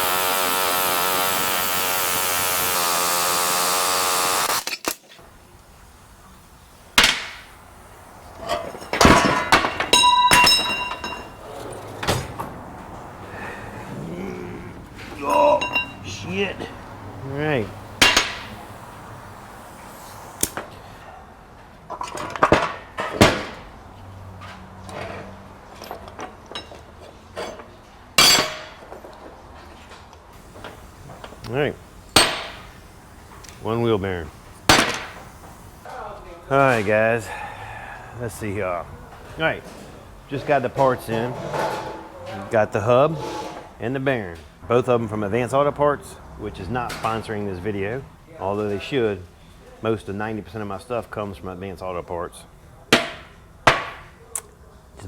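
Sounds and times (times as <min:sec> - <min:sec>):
handheld power tool running: 0:00.0 - 0:05.0, 0:17.7 - 0:20.6, 0:30.4 - 0:35.9
metal tools clanking: 0:08.3 - 0:12.4, 0:15.0 - 0:19.3, 0:30.4 - 0:35.8.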